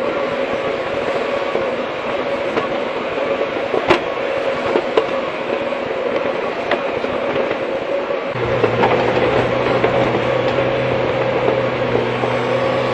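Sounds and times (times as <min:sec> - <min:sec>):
excavator engine whining: 0:08.3 - 0:12.9.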